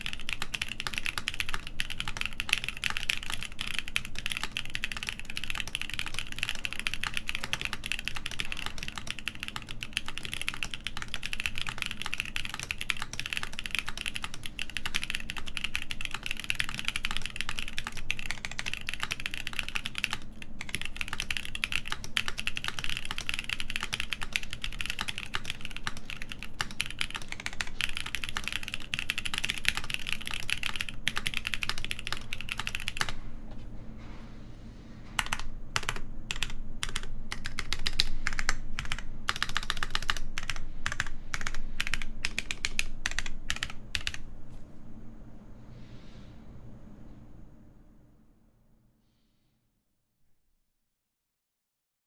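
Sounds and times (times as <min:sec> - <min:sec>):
fast typing on mechanical keyboard: 0:00.0 - 0:33.2, 0:35.2 - 0:44.2.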